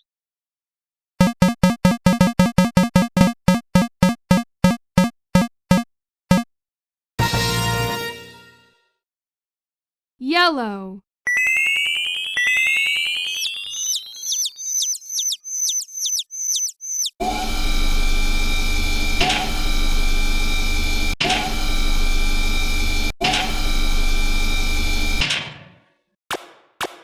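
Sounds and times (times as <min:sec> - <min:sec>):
rising electronic chirps: 0:11.3 - 0:17.2.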